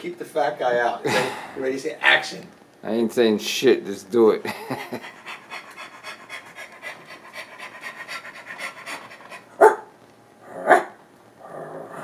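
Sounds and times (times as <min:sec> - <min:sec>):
dog panting raspily: 0:04.8 - 0:09.6.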